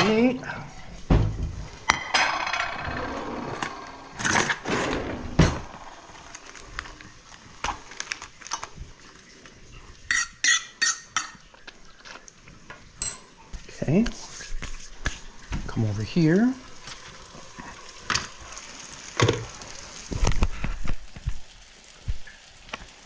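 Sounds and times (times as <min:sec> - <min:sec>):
dishes and cutlery clattering: 0:00.0 - 0:06.6, 0:10.1 - 0:12.2, 0:13.0 - 0:13.6
knocks: 0:01.0 - 0:06.0.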